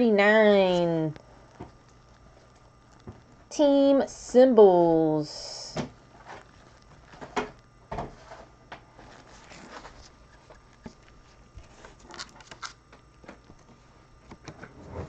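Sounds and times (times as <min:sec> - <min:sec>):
trading cards rustling and clicking: 0:09.0 - 0:13.7.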